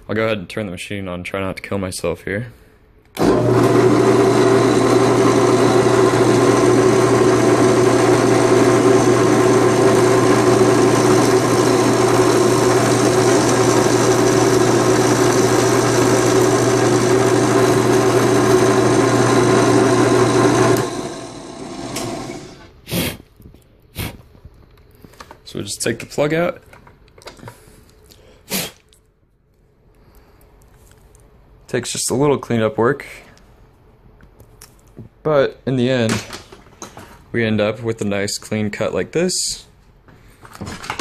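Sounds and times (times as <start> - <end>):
electric cutting machine running: 3.2 - 22.7.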